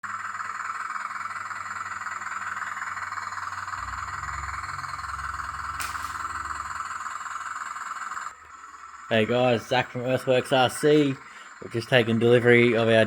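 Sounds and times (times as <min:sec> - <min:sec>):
low rumble under load: 0:00.0 - 0:12.9
hydraulic pump buzzing whine: 0:00.0 - 0:13.0
sharp click: 0:05.8 - 0:06.4.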